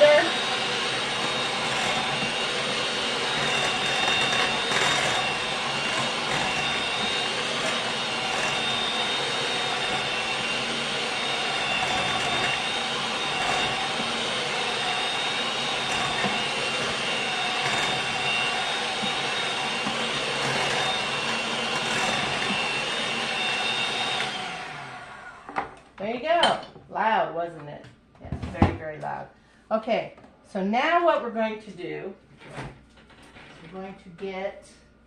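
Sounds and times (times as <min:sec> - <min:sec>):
electric mixer whining: 0:00.0 - 0:25.8.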